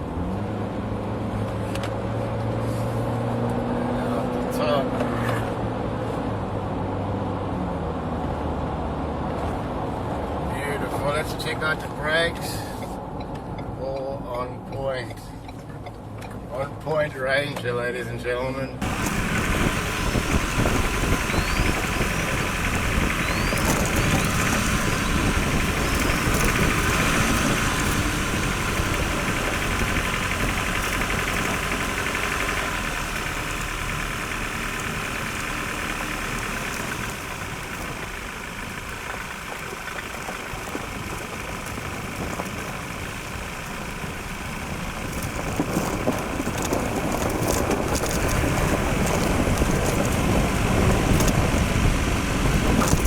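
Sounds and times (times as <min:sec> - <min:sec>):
road noise: 0:00.0 - 0:53.0
ticks and crunches: 0:18.8 - 0:34.0, 0:35.7 - 0:51.7
pickup diesel engine running: 0:18.8 - 0:53.0.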